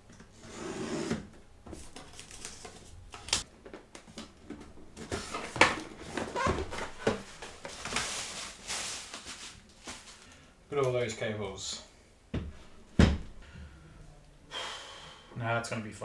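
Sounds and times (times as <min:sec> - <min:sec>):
rustling: 0:01.8 - 0:10.5.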